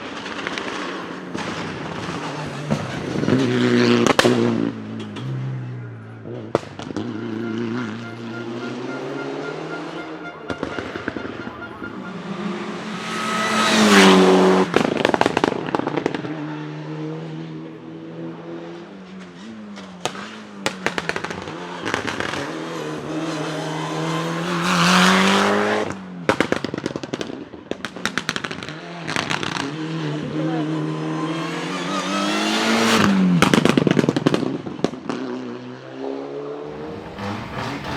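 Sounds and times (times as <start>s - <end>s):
car engine revving hard: 0.6s - 5.2s, 6.2s - 19.0s, 20.0s - 26.0s, 28.4s - 37.9s
anti-lag bangs and pops: 26.2s - 29.6s.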